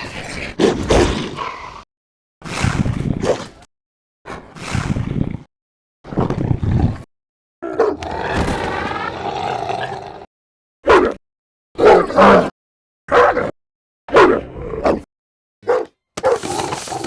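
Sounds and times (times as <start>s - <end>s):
creature growl: 8.0s - 10.3s, 16.2s - 17.0s.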